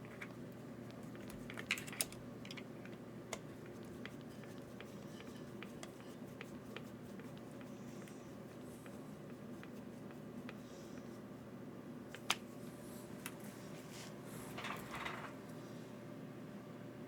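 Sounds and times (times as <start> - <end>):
steady low hum: 0.0 - 17.0
small parts clicking and tapping: 1.2 - 3.5.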